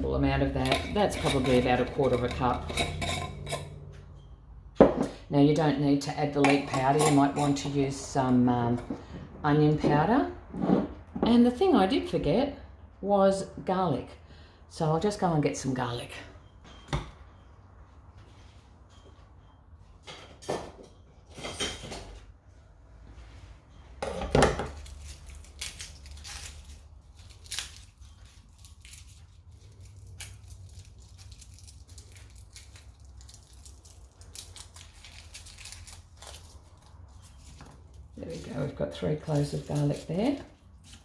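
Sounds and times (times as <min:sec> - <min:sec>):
low steady hum: 0:00.0 - 0:19.3
kitchen clicks and knocks: 0:00.3 - 0:04.2, 0:04.8 - 0:05.2, 0:06.2 - 0:10.0, 0:20.1 - 0:22.2, 0:24.0 - 0:25.0
rustling: 0:24.7 - 0:41.0.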